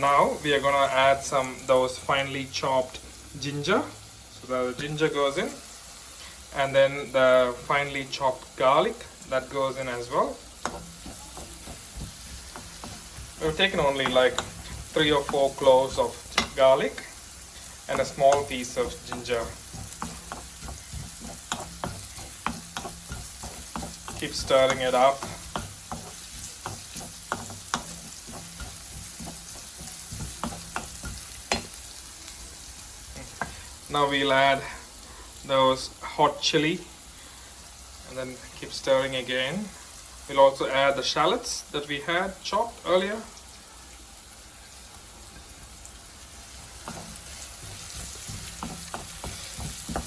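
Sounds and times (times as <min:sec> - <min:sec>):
onions sizzling in oil: 0:00.0 - 0:50.0
spoon scraping and knocking pan: 0:07.4 - 0:32.0, 0:46.5 - 0:50.0.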